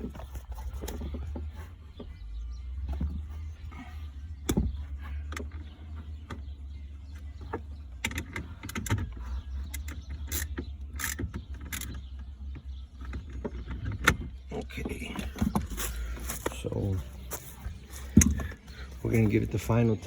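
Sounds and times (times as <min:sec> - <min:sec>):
tools clicking and knocking: 0:07.5 - 0:14.3.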